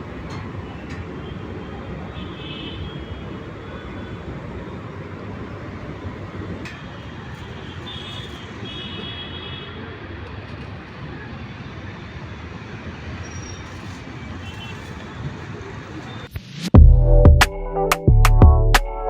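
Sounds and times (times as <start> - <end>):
music: 16.4 - 19.0.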